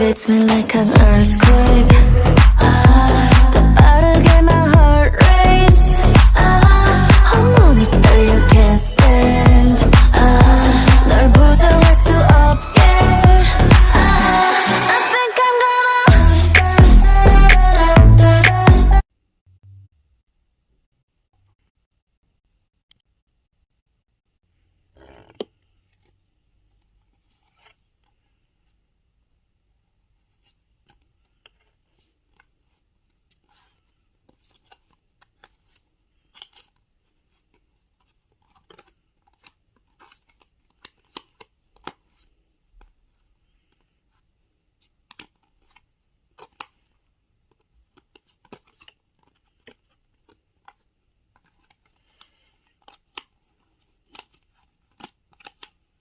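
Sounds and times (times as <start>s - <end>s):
paper and plastic crinkling: 30.4s - 44.2s, 44.8s - 56.0s.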